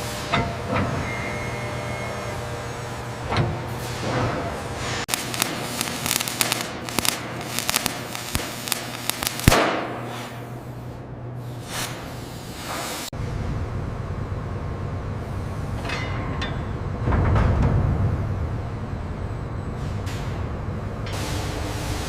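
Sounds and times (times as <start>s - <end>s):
sharp cracks and pops: 5.1s - 10.0s
loud bang with hiss: 5.1s - 10.5s.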